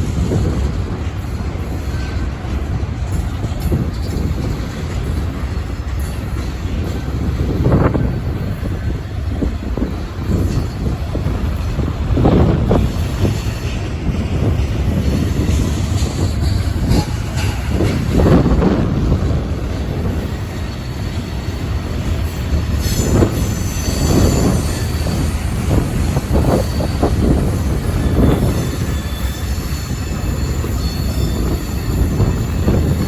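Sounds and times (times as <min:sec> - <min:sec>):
freight train rumbling past: 0:00.0 - 0:33.0
wind rumble on microphone: 0:00.0 - 0:33.0
high wheel squeal: 0:20.0 - 0:33.0.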